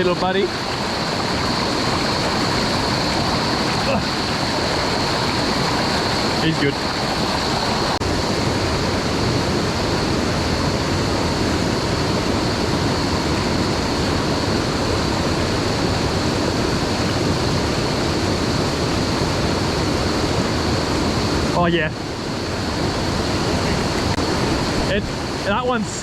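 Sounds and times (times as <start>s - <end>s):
stream rushing over rocks: 0.0s - 26.0s.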